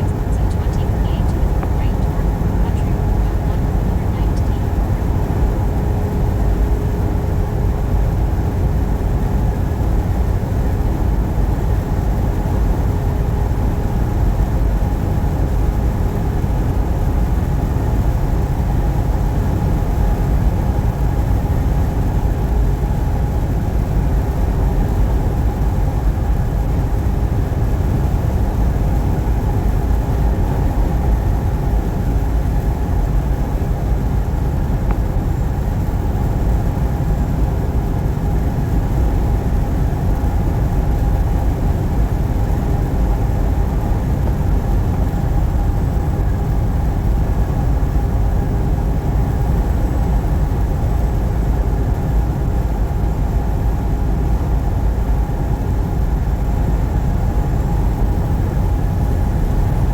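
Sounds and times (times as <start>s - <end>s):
faint steady tones: 0.0s - 8.0s
truck driving on highway: 0.0s - 59.9s.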